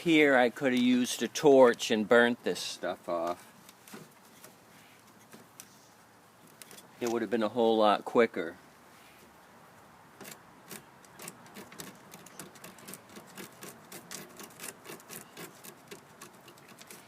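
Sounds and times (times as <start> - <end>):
hand tool scraping and clicking: 10.2 - 17.0.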